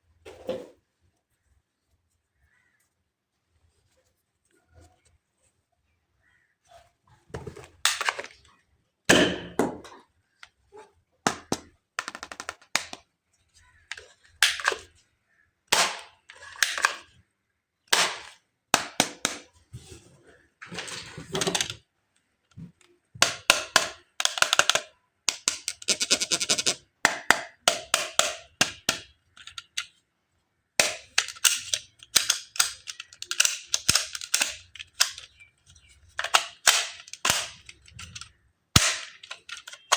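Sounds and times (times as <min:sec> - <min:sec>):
plastic toy clicks and snaps: 0:11.3 - 0:13.1, 0:23.3 - 0:29.9, 0:30.8 - 0:39.9.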